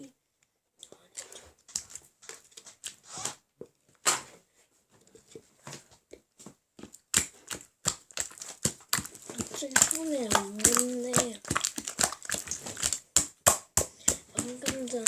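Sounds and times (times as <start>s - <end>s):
slime squeezed with sticky pops: 6.9s - 15.0s.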